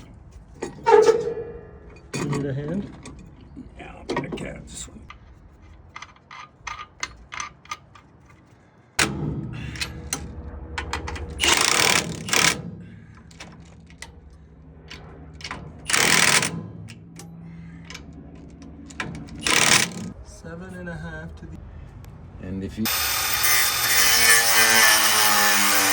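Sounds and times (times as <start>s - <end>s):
machine rattling bursts: 10.9s - 14.3s, 15.0s - 20.2s, 22.9s - 25.9s.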